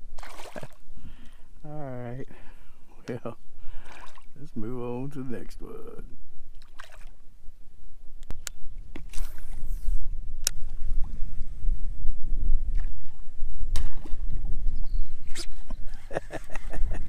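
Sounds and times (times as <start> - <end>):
kayak hull rumbling on water: 12.6 - 17.0.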